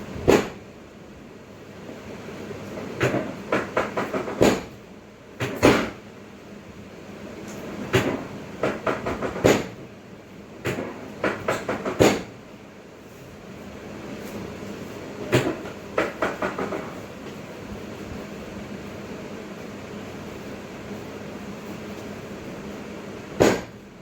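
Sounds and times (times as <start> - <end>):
steady background noise: 0.0 - 24.0
sharp knocks and clacks: 3.0 - 4.7, 7.9 - 9.8, 10.6 - 12.3, 15.3 - 17.0.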